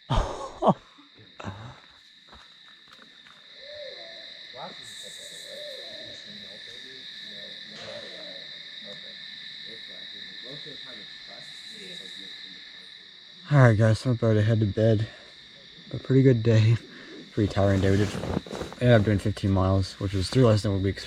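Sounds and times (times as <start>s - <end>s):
insects chirring: 0.0s - 21.0s
faint wavering lower calls: 3.5s - 9.2s.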